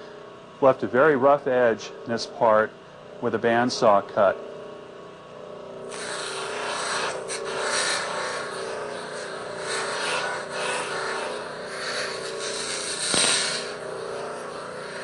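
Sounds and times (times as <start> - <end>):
grinding wheel humming: 4.4 - 15.0
metal grinding hiss: 5.9 - 15.0.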